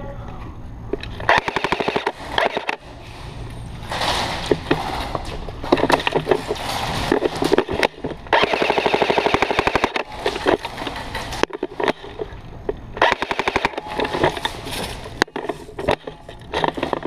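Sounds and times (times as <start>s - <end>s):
airsoft guns firing bursts: 1.3s - 2.8s, 8.3s - 10.1s, 13.0s - 14.0s.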